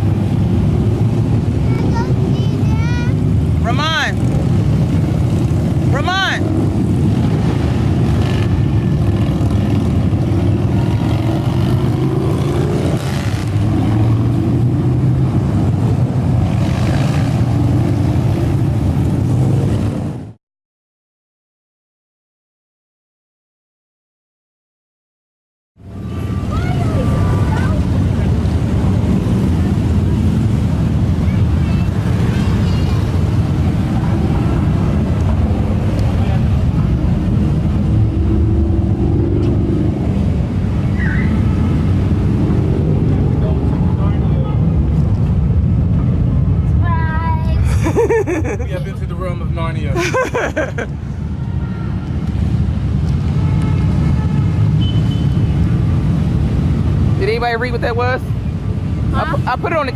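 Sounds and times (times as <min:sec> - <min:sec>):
motorcycle engines rumbling: 0:00.0 - 0:20.4, 0:25.8 - 0:59.9.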